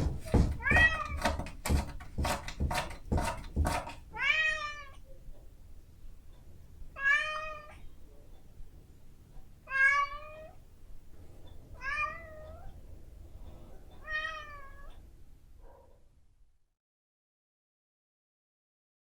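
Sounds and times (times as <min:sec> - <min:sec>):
cat meowing: 0:04.2 - 0:05.0, 0:07.0 - 0:07.8, 0:09.7 - 0:10.6, 0:11.8 - 0:12.7, 0:14.0 - 0:15.0.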